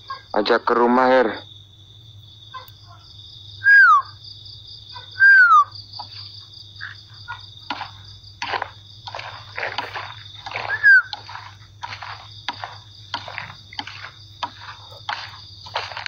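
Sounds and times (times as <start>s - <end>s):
night insects chirring: 0.0s - 16.0s
animal whistled calls: 3.6s - 4.2s, 5.0s - 5.8s, 10.6s - 11.3s
scuffs and crunches: 7.3s - 16.0s.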